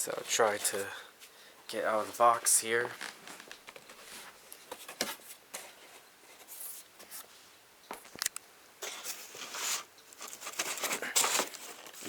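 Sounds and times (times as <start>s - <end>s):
cardboard packaging rustling: 1.8s - 7.3s, 8.8s - 12.0s.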